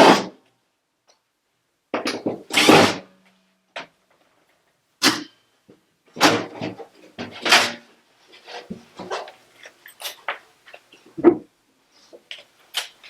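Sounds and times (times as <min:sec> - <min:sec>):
metal parts and tools clattering: 0:08.5 - 0:10.9.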